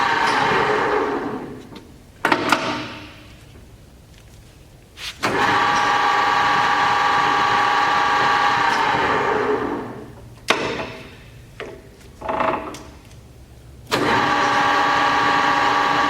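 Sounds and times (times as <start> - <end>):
lathe gear whine: 13.9 - 16.0.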